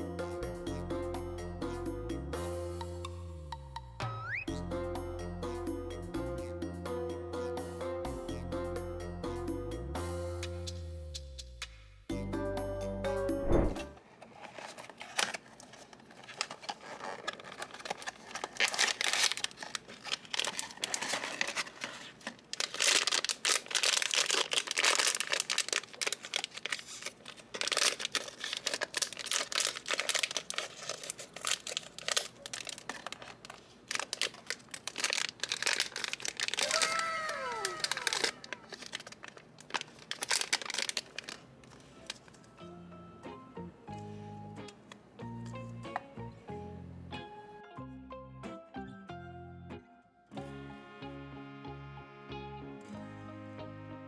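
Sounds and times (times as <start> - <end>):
packaging crinkling and tearing: 14.2 - 42.4.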